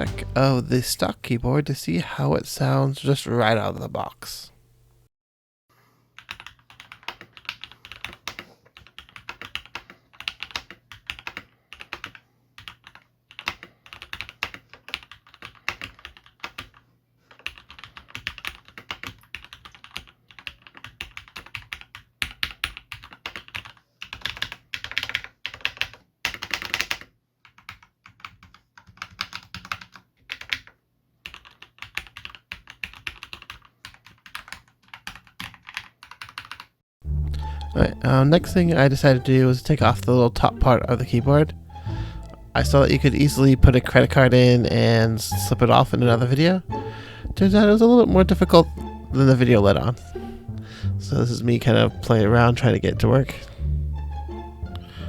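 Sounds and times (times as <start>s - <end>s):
mechanical keyboard typing: 6.2s - 36.7s.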